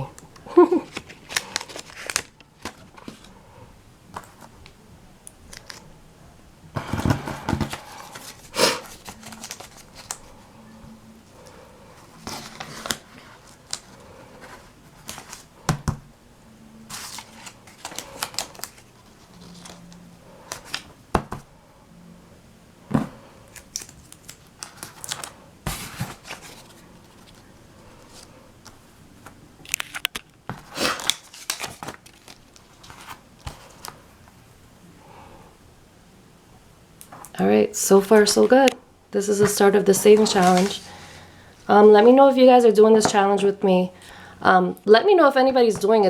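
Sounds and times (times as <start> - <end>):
paper and tape rustling: 0.6 - 3.4, 6.8 - 10.4, 11.3 - 15.5, 16.9 - 21.3, 23.5 - 28.3, 29.2 - 34.0, 39.4 - 41.2.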